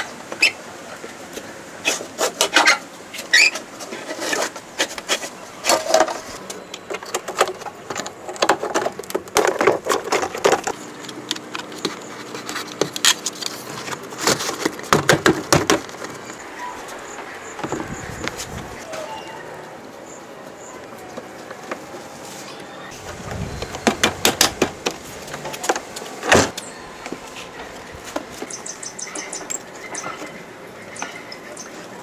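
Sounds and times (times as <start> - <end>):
hand tool scraping: 1.8 - 16.9.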